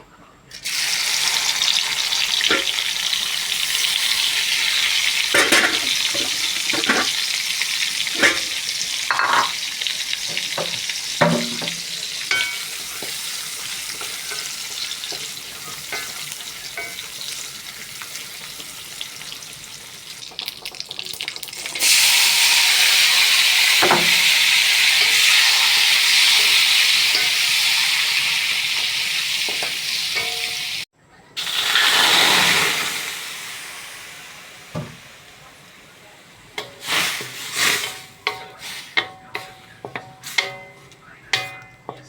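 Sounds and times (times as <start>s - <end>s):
food sizzling in oil: 0.6s - 42.0s
spatula scraping a pan: 3.8s - 7.4s, 8.0s - 17.6s, 36.6s - 42.0s.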